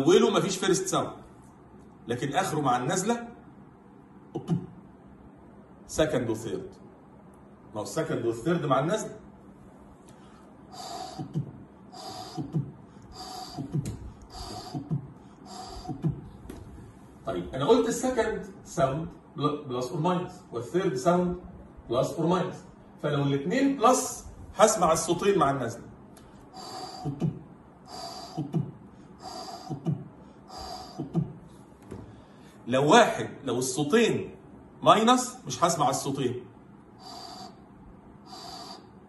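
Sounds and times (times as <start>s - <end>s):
man imitating heart sounds: 4.3s - 4.8s, 10.9s - 16.7s, 26.7s - 31.5s
breathy mouth whoosh: 10.7s - 16.4s, 26.5s - 31.5s, 37.0s - 37.6s, 38.2s - 39.0s
low mouth thuds: 13.6s - 16.8s.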